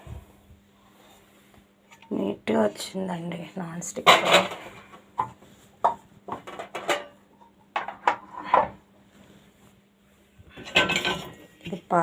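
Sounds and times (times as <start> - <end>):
metal kitchen vessels clinking: 4.0 - 4.7, 6.4 - 7.2, 10.6 - 11.5.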